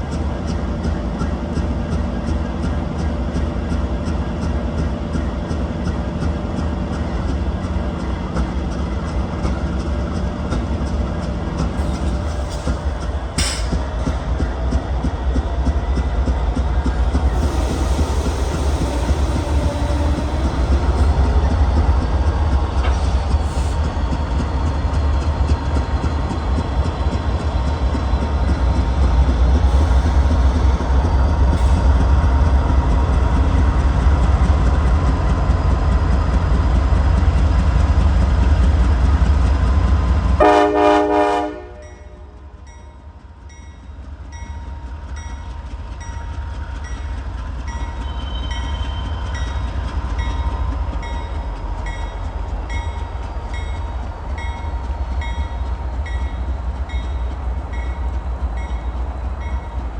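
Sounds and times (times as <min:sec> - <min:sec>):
diesel locomotives rumbling: 0:00.0 - 0:59.9
locomotive horn blast: 0:40.4 - 0:42.4.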